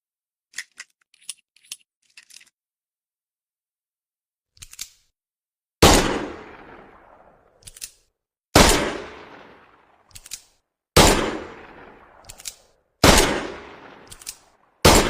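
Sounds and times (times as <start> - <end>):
revolver gunshot: 5.8 - 7.5, 8.6 - 10.0, 11.0 - 12.3, 13.0 - 14.1
revolver action clicks: 14.0 - 14.5.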